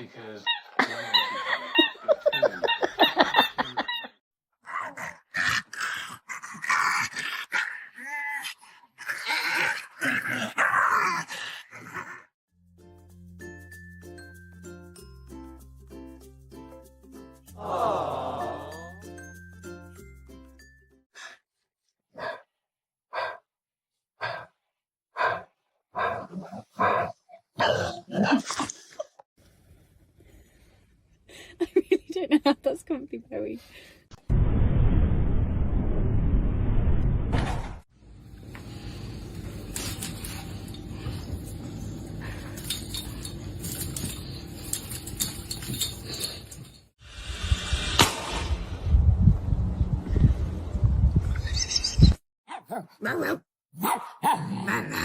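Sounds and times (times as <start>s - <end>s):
background music: 12.7s - 21.0s
rough noisy dog sounds: 24.2s - 24.6s, 25.2s - 28.7s.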